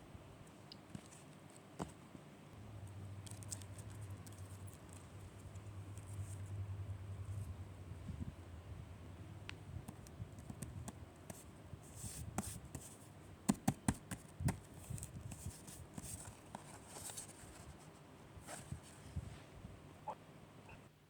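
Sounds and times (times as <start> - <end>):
light taps and clicks: 9.4 - 11.5
paper rustling: 13.6 - 19.0.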